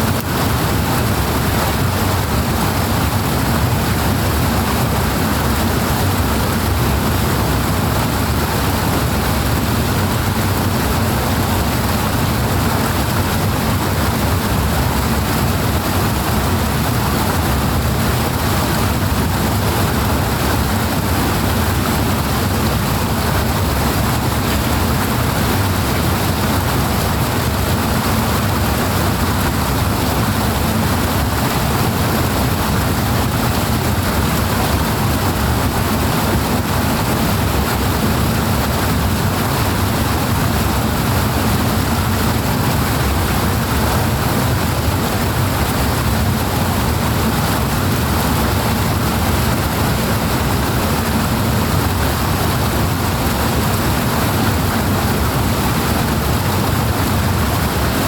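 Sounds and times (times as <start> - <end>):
rushing water: 0.0 - 58.0.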